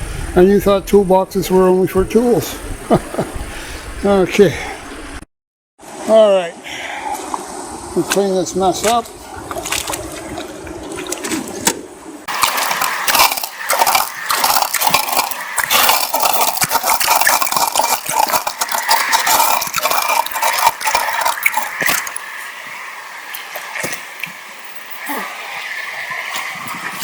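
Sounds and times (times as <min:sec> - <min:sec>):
metal gear clattering and clinking: 0:12.3 - 0:22.2.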